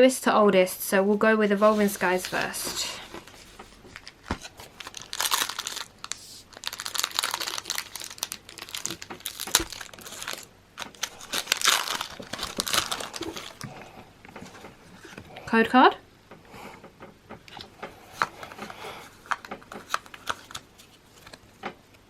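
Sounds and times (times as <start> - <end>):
foil wrapper tearing and crinkling: 3.2 - 13.7.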